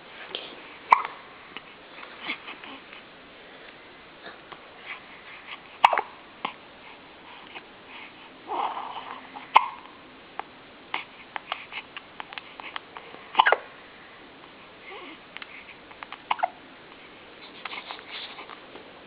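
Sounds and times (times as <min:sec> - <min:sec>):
baby hiccuping: 0:00.9 - 0:01.2, 0:05.8 - 0:06.2, 0:09.5 - 0:09.9, 0:13.4 - 0:13.7, 0:16.1 - 0:16.6.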